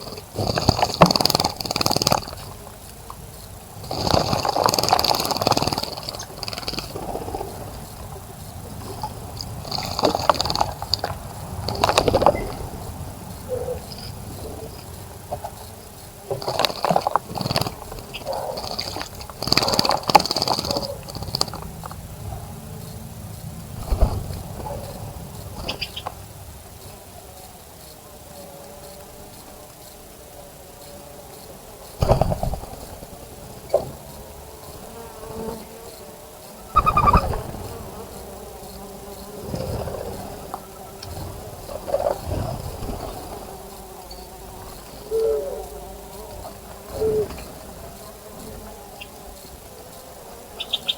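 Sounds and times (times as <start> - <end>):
flying insect buzzing: 0.0 - 50.9
bird wings fluttering: 23.8 - 26.0, 36.6 - 38.0.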